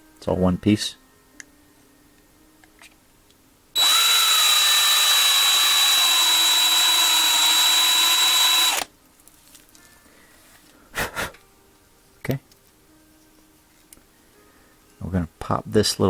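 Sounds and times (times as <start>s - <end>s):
electric drill drilling metal: 3.8s - 8.9s.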